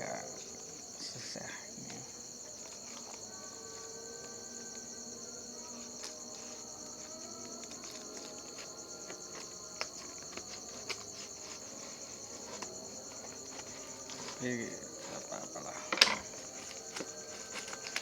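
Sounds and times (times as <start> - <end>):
crickets chirring: 0.0 - 18.0
packaging crackling: 6.0 - 18.0.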